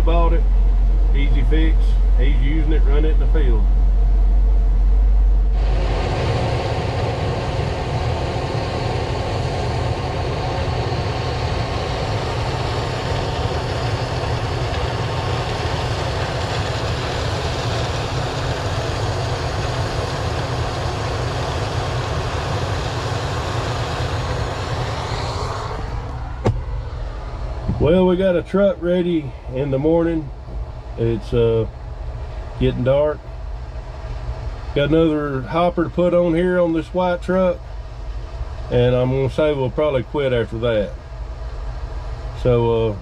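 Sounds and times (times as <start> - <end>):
diesel engine hum: 0.0 - 43.0
dense even rushing noise: 23.0 - 41.4.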